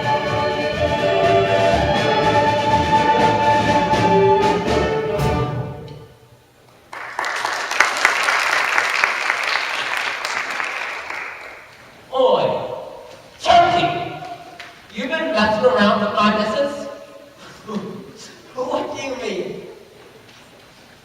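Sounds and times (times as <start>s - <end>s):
musical accompaniment: 0.0s - 6.4s
audience applause: 6.9s - 11.7s.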